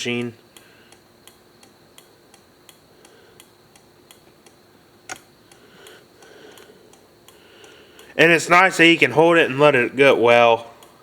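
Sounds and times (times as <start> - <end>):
turn signal flasher ticking: 0.0 - 8.5, 10.7 - 11.0.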